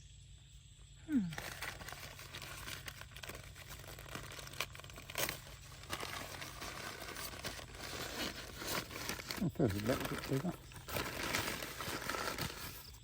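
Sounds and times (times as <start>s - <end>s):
paper bag crinkling: 1.3s - 13.0s.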